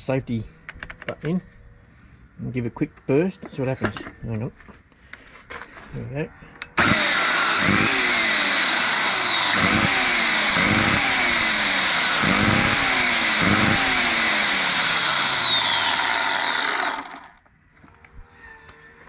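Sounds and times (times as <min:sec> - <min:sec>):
electric chainsaw motor running: 0:06.8 - 0:17.4.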